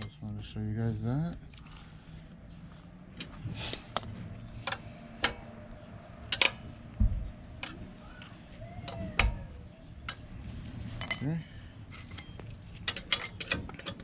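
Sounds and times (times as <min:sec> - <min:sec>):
low thumps: 0:06.9 - 0:07.7.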